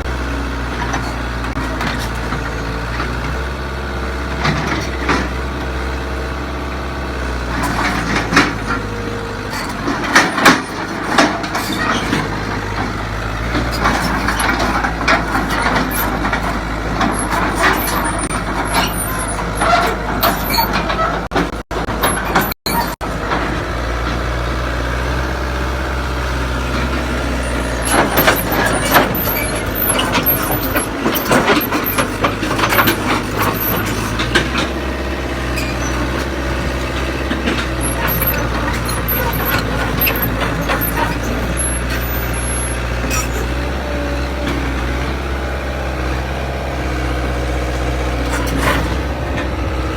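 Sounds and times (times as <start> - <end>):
diesel engine running under load: 0.0 - 49.9
metal clanks and knocks: 7.6 - 23.8, 26.8 - 43.6.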